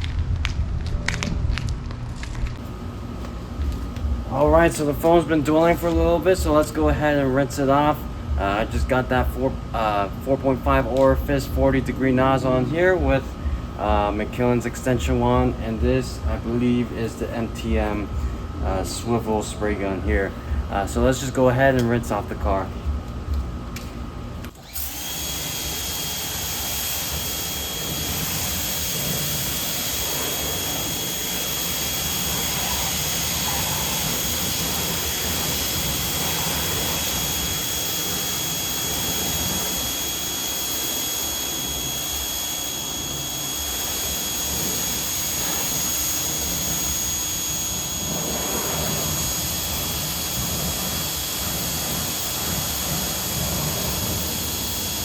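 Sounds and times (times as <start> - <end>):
thin high whine: 0.0 - 55.0
pressure washer water spray: 24.6 - 55.0.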